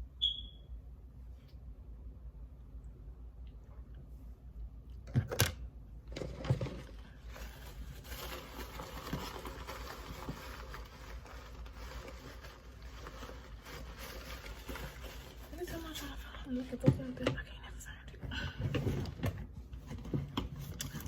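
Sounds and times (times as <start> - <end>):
rustling and scraping of items: 6.1 - 17.5, 18.2 - 21.0.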